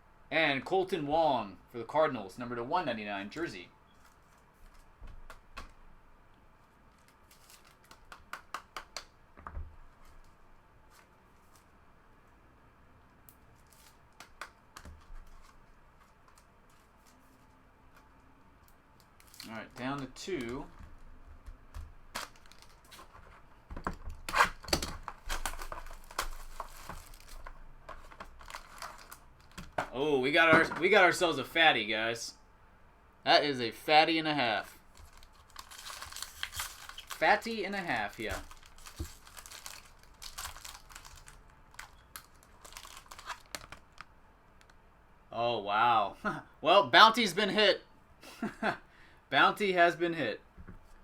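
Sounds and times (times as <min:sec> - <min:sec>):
wrapper tearing and crinkling: 0:07.0 - 0:08.2, 0:19.1 - 0:20.1, 0:22.1 - 0:23.2, 0:24.2 - 0:29.8, 0:34.8 - 0:44.7
cards clicking and tapping: 0:07.8 - 0:09.1.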